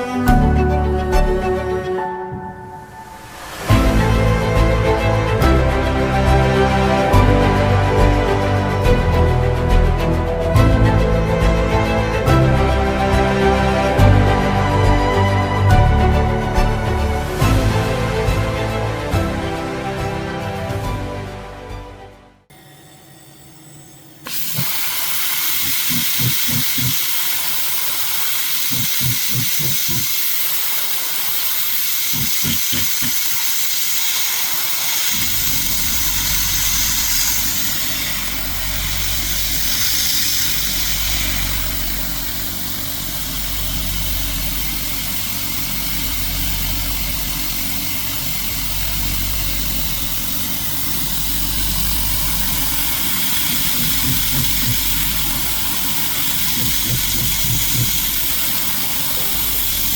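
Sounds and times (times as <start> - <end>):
low rumble of drilling: 0.3 - 18.8, 22.5 - 59.9
router spindle high hiss: 22.5 - 59.9
low pulses: 35.2 - 59.9.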